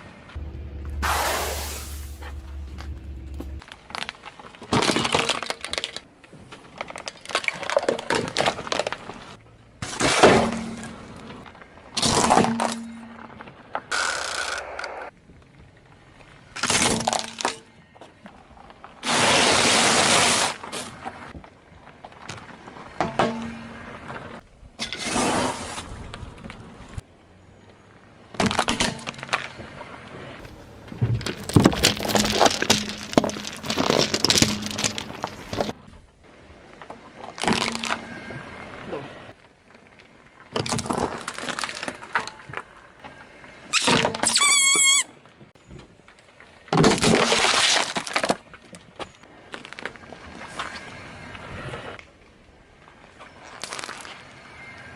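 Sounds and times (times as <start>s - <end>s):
objects crackling under car tyre: 0.2s - 23.1s, 28.2s - 43.2s, 45.6s - 54.9s
objects crushed under car tyre: 30.4s - 35.8s.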